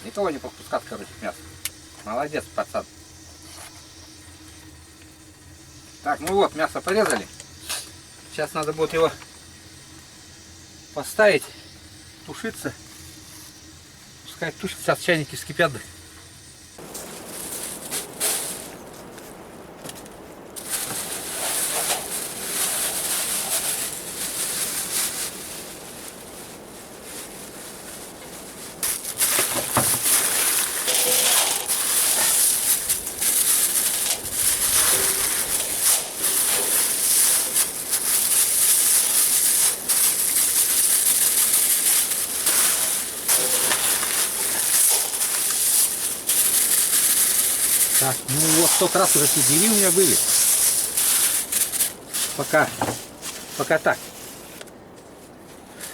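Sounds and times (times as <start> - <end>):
meat sizzling in a hot pan: 20.6 - 26.1, 27.1 - 52.7.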